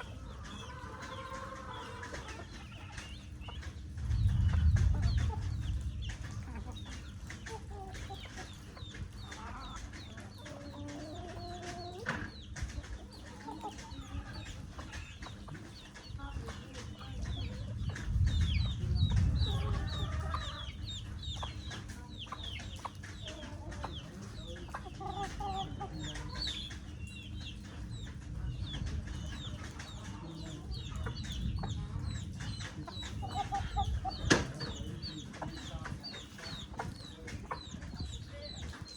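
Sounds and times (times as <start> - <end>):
chickens clucking: 0.0 - 38.9
low rumble: 3.5 - 7.7, 17.0 - 21.7.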